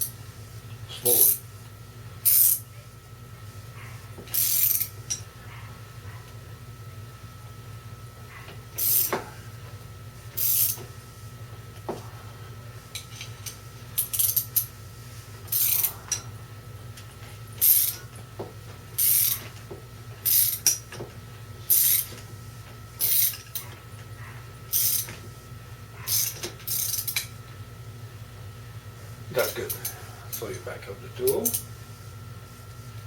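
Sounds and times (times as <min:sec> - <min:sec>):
ratchet wrench clicking: 0:01.1 - 0:01.4, 0:02.2 - 0:02.7, 0:04.3 - 0:05.2, 0:08.8 - 0:09.2, 0:10.4 - 0:10.8, 0:13.0 - 0:14.7, 0:15.5 - 0:16.0, 0:17.6 - 0:18.0, 0:19.0 - 0:19.4, 0:20.2 - 0:20.8, 0:21.7 - 0:22.1, 0:23.0 - 0:23.5, 0:24.7 - 0:25.1, 0:26.1 - 0:27.3.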